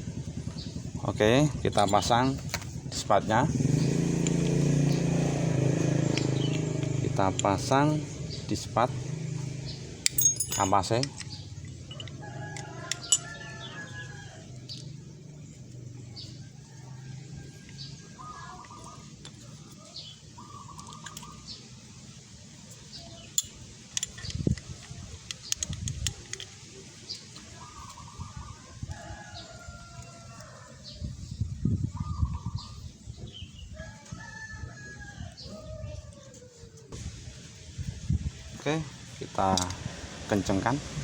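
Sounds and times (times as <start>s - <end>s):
sharp metallic clicks: 4.2s - 8.6s
chickens calling: 10.5s - 23.1s, 26.6s - 37.4s.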